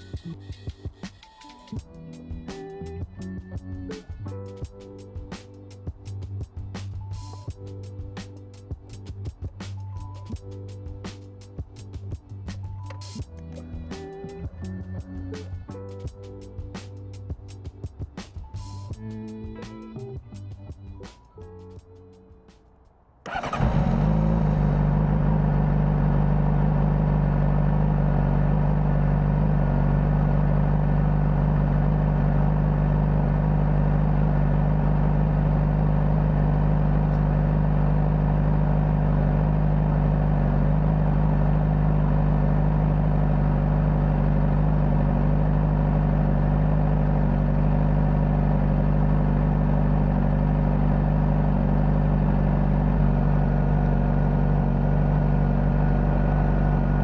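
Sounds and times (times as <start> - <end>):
motorcycle engine idling: 23.3 - 57.0.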